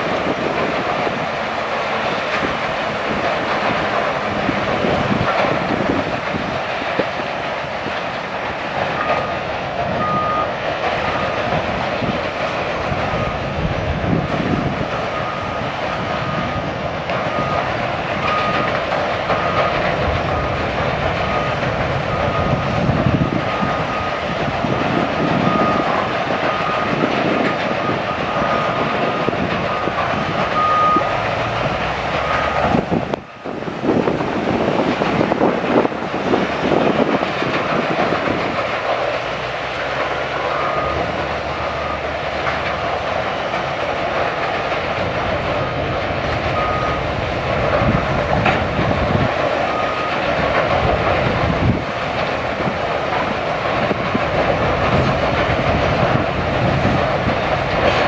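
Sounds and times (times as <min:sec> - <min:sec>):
sawmill machinery din: 0:00.0 - 0:58.0
repeated beeping tone: 0:10.0 - 0:10.5, 0:27.8 - 0:31.2, 0:40.4 - 0:42.2, 0:46.6 - 0:47.1.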